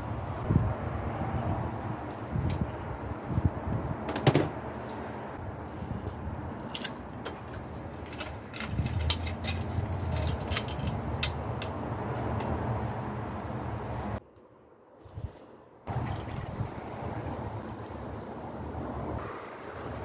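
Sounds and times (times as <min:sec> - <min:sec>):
metallic clicks of bike tools: 0:06.4 - 0:12.6.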